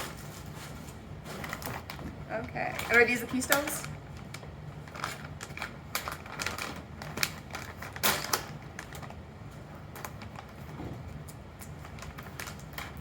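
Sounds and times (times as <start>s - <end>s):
plastic parts clicking and rattling: 4.9s - 9.2s.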